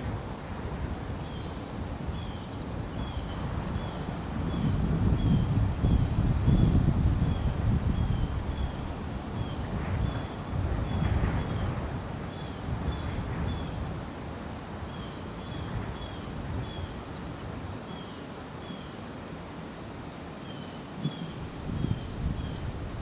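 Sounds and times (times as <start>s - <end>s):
wind buffeting microphone: 0.0s - 18.0s, 20.8s - 23.0s
leaves rustling: 0.0s - 23.0s.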